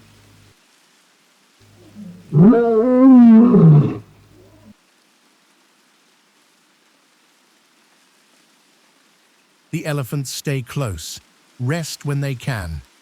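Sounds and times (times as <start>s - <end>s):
lion roaring: 1.8s - 4.7s.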